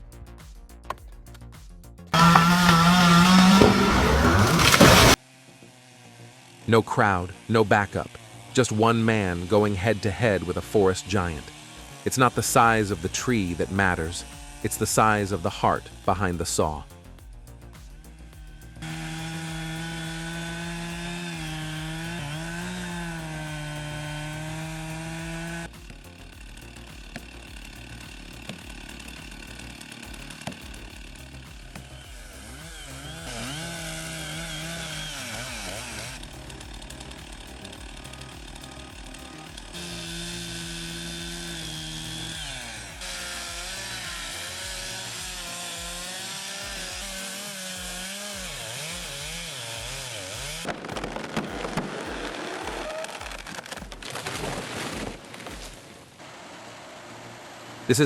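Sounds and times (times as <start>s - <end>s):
chainsaw cutting wood: 2.1s - 58.0s.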